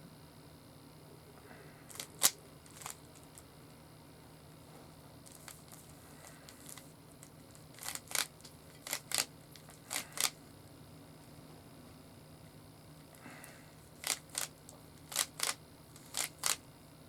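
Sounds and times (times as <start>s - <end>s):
puzzle cube clicking turns: 1.9s - 3.4s, 7.7s - 10.4s, 14.0s - 16.6s.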